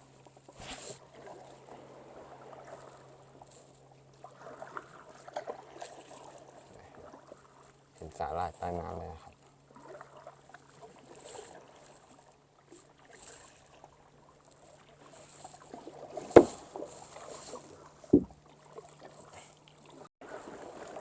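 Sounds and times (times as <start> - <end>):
paddle swishing through water: 0.0 - 21.0
sharp knocks: 16.4 - 16.6, 18.2 - 18.4.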